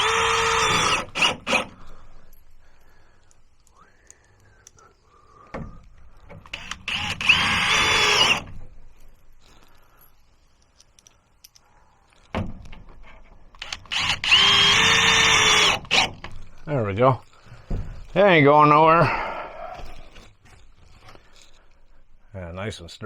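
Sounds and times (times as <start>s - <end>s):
power drill driving screws: 0.0s - 2.1s, 6.5s - 8.6s, 13.6s - 16.4s.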